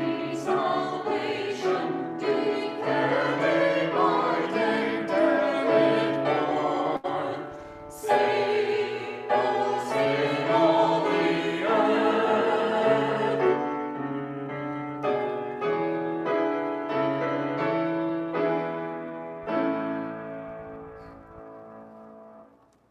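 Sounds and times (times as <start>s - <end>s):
church choir singing: 0.0s - 21.7s.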